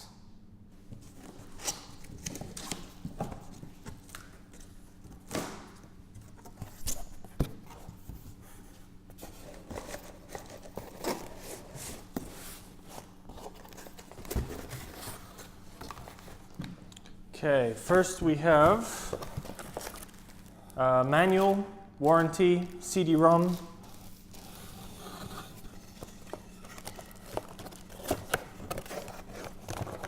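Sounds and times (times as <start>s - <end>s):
steady low hum: 0.0s - 30.0s
cardboard box rustling and scraping: 9.2s - 16.6s, 23.9s - 30.0s.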